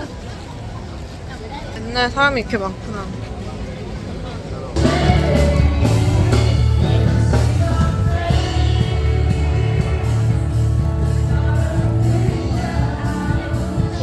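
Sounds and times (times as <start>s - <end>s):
heavy bass line: 4.8s - 14.0s
person singing: 4.8s - 14.0s.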